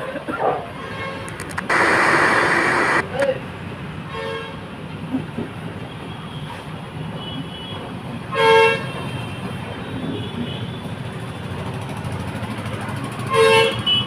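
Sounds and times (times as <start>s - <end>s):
low traffic rumble: 1.3s - 4.0s.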